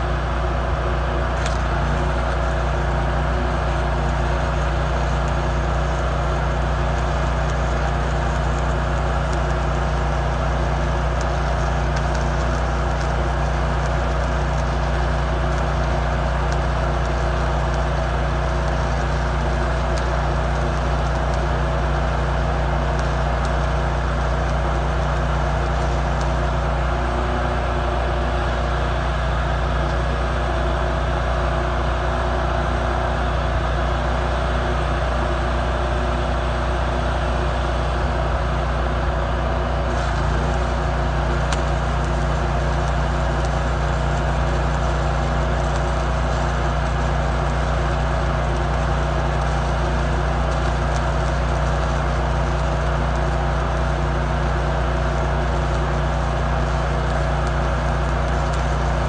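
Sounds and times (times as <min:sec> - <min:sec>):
engine running steadily: 0:00.0 - 0:59.0.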